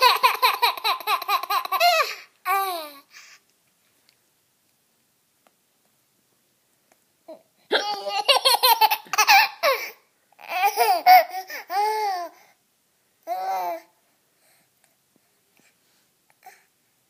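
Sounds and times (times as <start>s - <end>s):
baby laughing: 0.0s - 3.0s, 7.7s - 12.3s.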